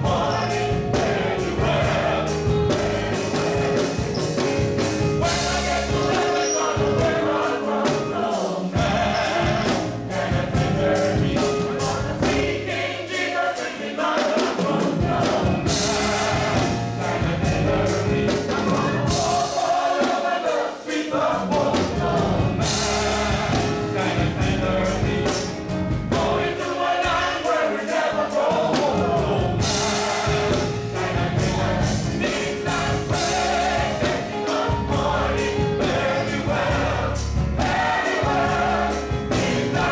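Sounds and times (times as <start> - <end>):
bass line: 0.0 - 6.2, 8.8 - 12.6, 15.6 - 19.4, 22.0 - 26.4, 29.2 - 39.9
drum beat: 0.0 - 13.3, 14.0 - 20.6, 21.3 - 39.9
gospel choir singing: 0.0 - 39.9.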